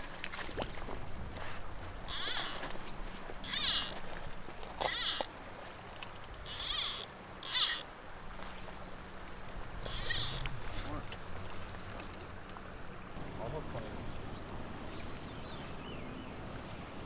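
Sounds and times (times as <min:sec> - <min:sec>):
fly line zipping off reel: 0:02.1 - 0:02.7, 0:03.4 - 0:04.1, 0:04.8 - 0:05.3, 0:06.4 - 0:07.9, 0:09.8 - 0:10.6.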